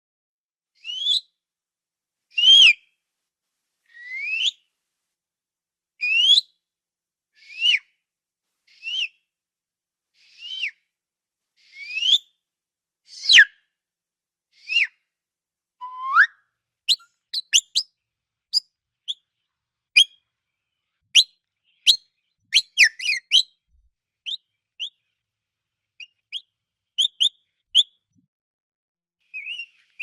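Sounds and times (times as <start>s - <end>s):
quail whistled calls: 0.8s - 1.2s, 15.8s - 17.9s, 20.0s - 20.2s, 21.2s - 23.5s, 24.3s - 25.0s, 26.0s - 28.0s, 29.4s - 29.8s.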